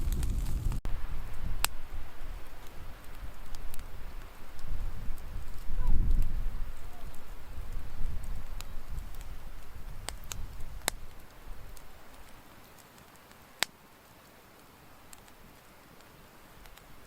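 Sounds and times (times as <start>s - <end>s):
wind rumble on microphone: 0.0s - 12.2s.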